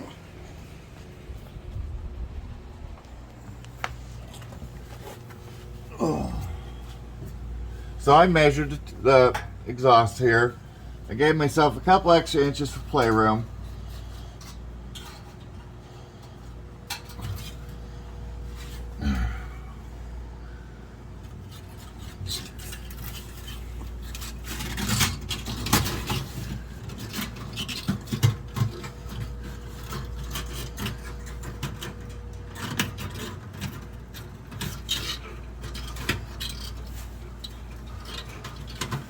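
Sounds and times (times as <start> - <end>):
wire mesh scraping and clinking: 21.4 - 39.0.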